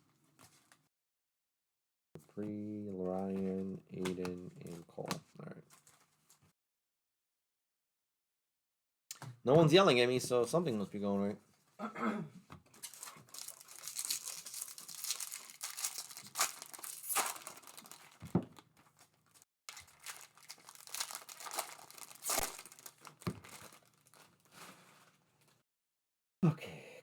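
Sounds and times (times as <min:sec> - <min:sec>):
plastic wrapper crinkling and tearing: 0:12.8 - 0:25.6.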